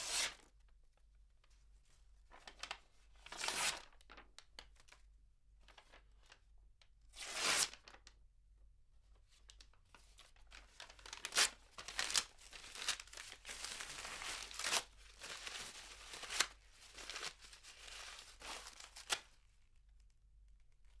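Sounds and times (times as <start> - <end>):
paper tearing: 0.0 - 0.4, 3.3 - 3.8, 7.2 - 7.9, 11.1 - 16.5.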